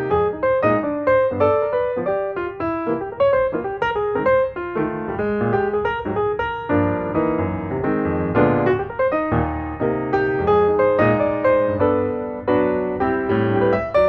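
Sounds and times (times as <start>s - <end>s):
piano melody: 0.0s - 14.0s.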